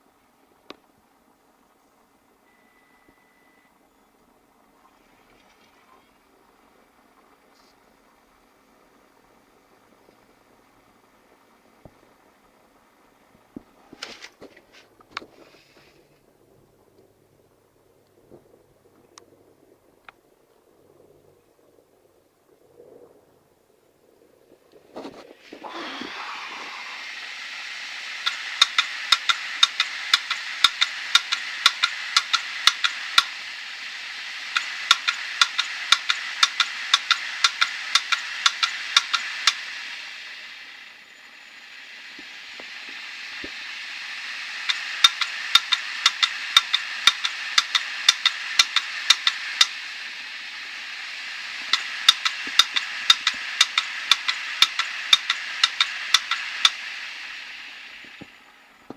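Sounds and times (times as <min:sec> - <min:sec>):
hard disk drive whirring: 0:00.0 - 0:21.3, 0:24.1 - 0:58.9
hard disk heads clicking: 0:25.0 - 0:41.0, 0:42.1 - 0:58.9.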